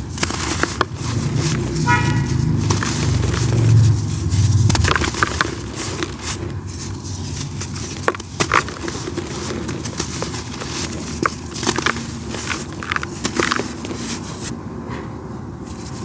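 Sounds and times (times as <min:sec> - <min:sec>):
dirt clumps crumbling: 0:00.0 - 0:14.6
low vehicle rumble: 0:00.0 - 0:16.0
car horn toot: 0:01.8 - 0:02.6.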